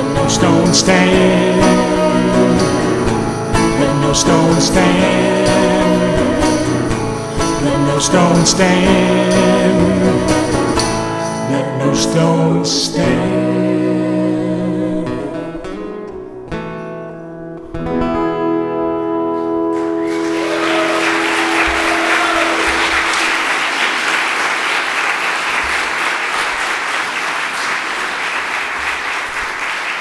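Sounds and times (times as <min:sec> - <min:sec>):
guitar and piano chords ringing: 0:00.0 - 0:24.2
audience applause: 0:19.8 - 0:30.0.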